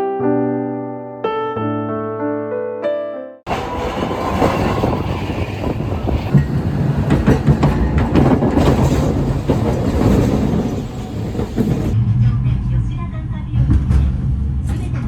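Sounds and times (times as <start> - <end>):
wheels clattering over track: 3.5 - 12.0
tram rumbling on rails: 3.5 - 15.0.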